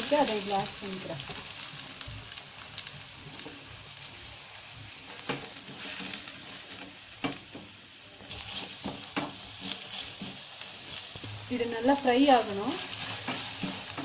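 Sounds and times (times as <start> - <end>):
onions sizzling in hot oil: 0.0 - 14.0
spoon scraping a pan: 8.2 - 11.0, 12.8 - 14.0.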